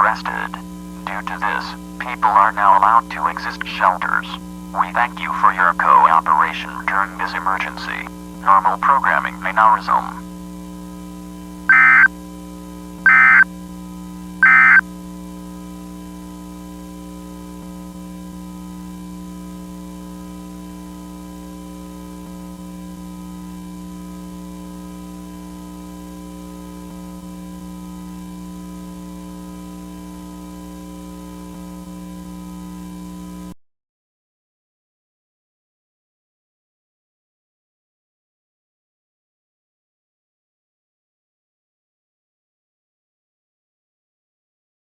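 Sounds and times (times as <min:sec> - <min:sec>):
low electronic hum: 0:00.0 - 0:10.3, 0:11.7 - 0:12.1, 0:13.1 - 0:13.4
shrill warbling data chirps: 0:11.7 - 0:12.1, 0:13.1 - 0:13.4, 0:14.4 - 0:14.8.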